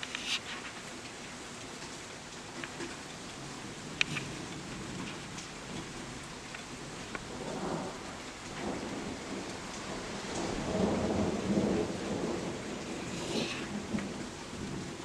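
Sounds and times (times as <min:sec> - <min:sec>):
steady rain falling: 0:00.0 - 0:15.0
thunder rumbling: 0:03.6 - 0:15.0.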